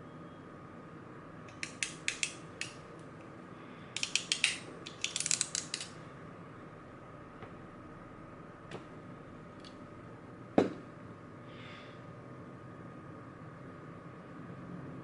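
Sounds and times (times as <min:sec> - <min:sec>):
faint steady tone: 0:00.0 - 0:01.2.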